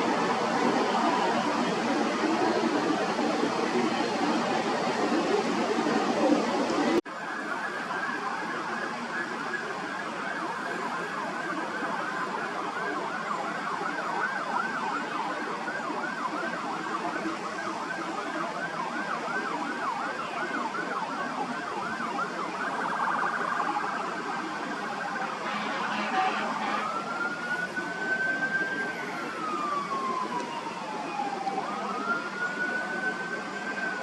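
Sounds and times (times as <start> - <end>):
emergency siren yelping: 0.0 - 34.0
steady background noise: 0.0 - 34.0.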